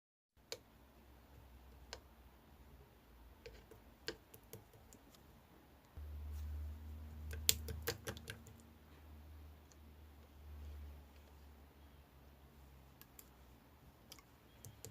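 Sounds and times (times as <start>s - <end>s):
low hum: 6.0s - 13.0s.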